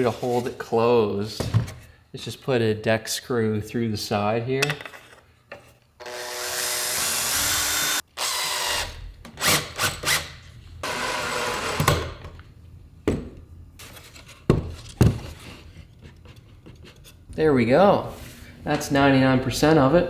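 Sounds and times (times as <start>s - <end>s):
power drill driving screw: 6.0s - 12.1s.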